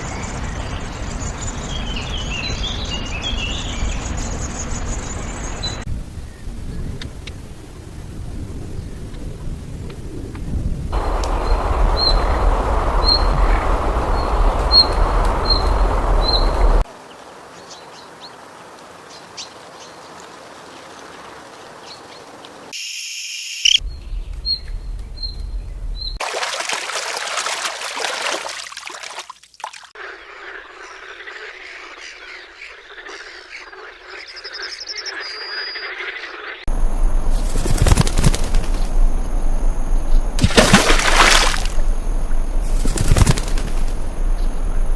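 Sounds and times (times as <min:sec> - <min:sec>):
loud steady hiss: 0:11.0 - 0:17.0.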